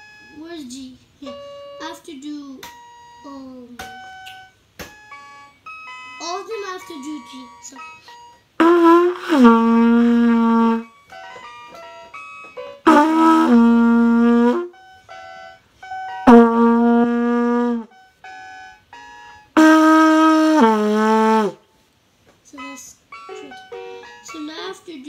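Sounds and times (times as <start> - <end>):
trumpet playing held notes: 8.6 - 11.0, 12.8 - 18.0, 19.5 - 21.7.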